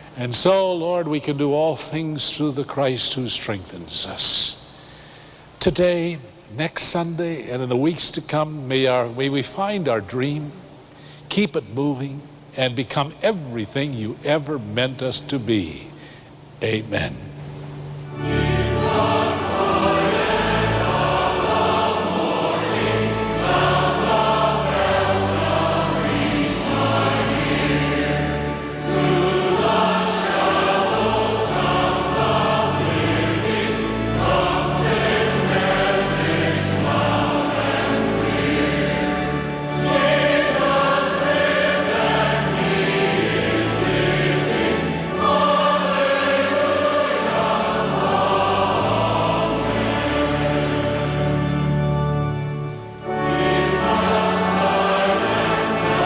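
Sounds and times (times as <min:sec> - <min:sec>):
choir singing: 0:18.1 - 0:56.0.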